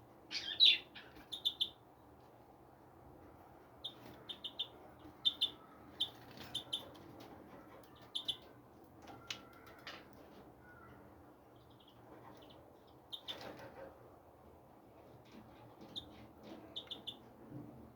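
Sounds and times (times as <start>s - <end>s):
small birds chirping: 0.3s - 2.0s, 3.8s - 13.8s, 15.8s - 17.3s.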